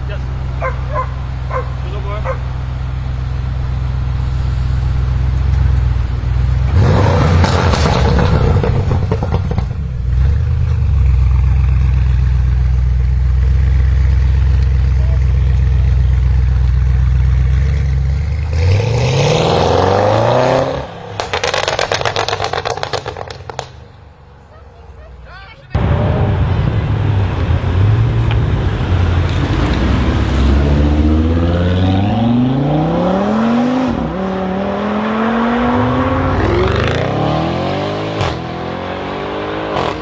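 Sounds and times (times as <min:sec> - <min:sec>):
exhaust crackles and pops: 0:00.0 - 0:18.8, 0:20.7 - 0:24.2
car engine idling and revving: 0:00.0 - 0:40.0.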